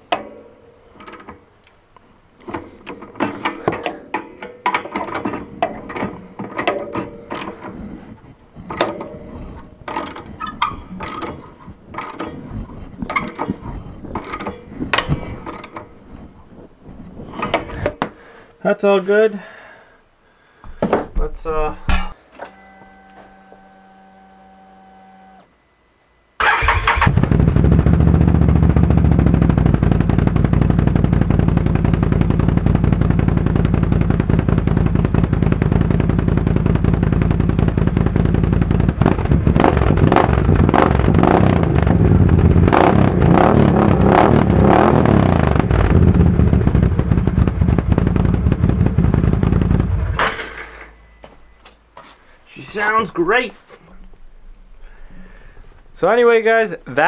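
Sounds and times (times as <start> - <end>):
loud engine running: 2.4 - 18.0, 26.4 - 51.4.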